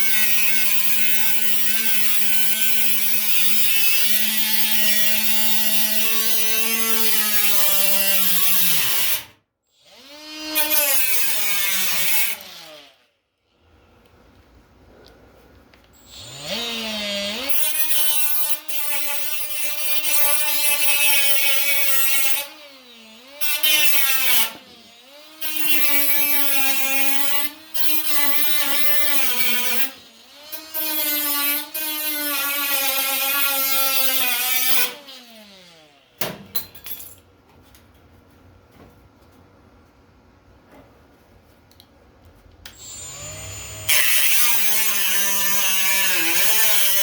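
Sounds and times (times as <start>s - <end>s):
power grinder on sheet metal: 0.0s - 9.3s, 9.9s - 13.0s, 16.0s - 36.0s, 42.7s - 47.0s.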